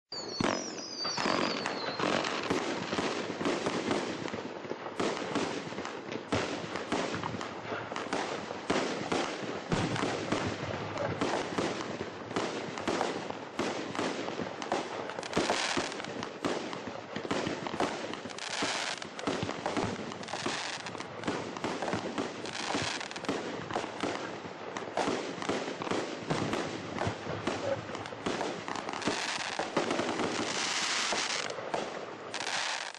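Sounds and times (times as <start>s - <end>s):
falling firework whistle: 0.1s - 2.7s, 28.7s - 31.5s
firework pops and bursts: 0.1s - 32.9s.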